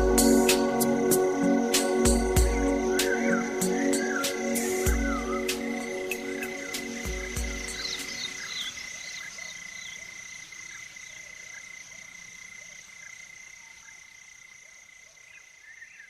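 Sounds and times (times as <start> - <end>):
high-pitched trills: 0.0 - 8.5
music: 0.0 - 8.6
frogs chirping: 0.0 - 16.0.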